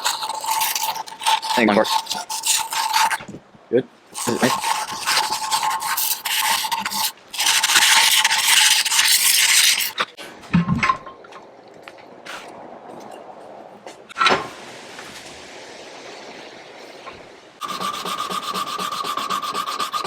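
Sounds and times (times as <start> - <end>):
sanding wood rasping: 0.0 - 3.2, 4.2 - 10.1, 17.6 - 20.0.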